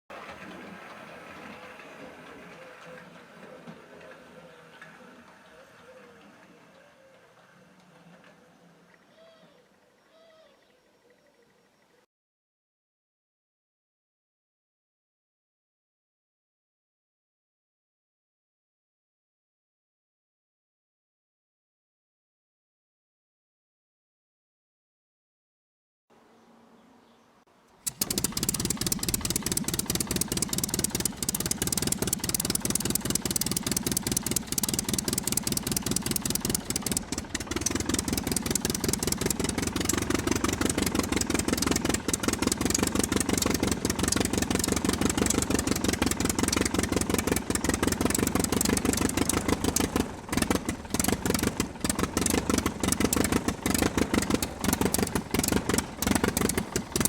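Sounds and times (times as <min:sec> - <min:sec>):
piston aero engine running: 0:27.8 - 0:57.0.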